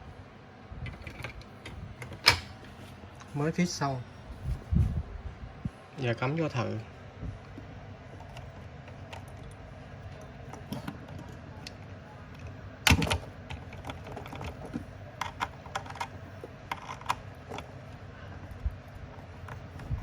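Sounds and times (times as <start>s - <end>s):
hands handling a console: 0.9s - 3.0s.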